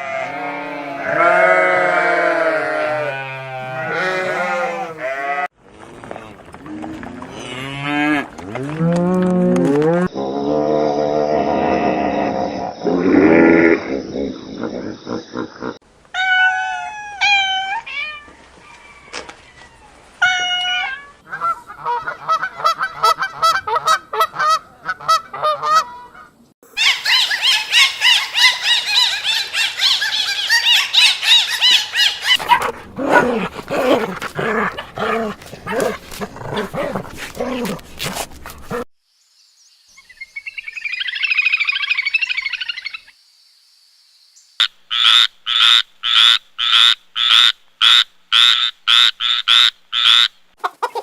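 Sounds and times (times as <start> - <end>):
chorus of high-pitched calls: 26.7 - 32.4
animal yelps and growls: 26.8 - 38.8.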